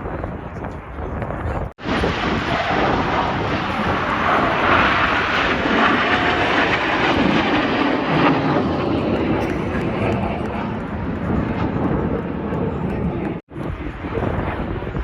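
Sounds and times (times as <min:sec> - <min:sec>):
airplane engine flying past: 0:01.8 - 0:15.0.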